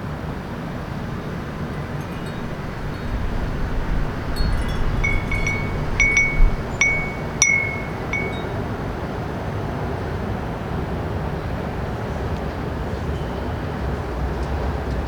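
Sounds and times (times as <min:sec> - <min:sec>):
wind chime ringing: 0:01.0 - 0:08.7.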